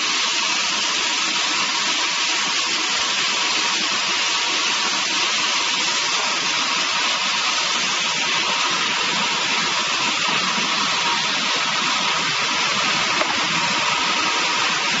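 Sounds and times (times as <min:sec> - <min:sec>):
band saw hissing: 0:05.6 - 0:15.0.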